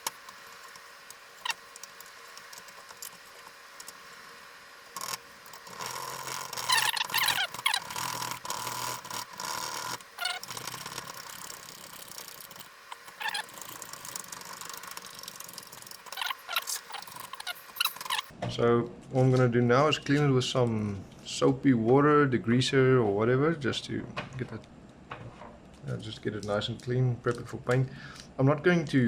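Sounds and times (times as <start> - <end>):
dry scrubbing with squeaks: 5.6 - 18.3.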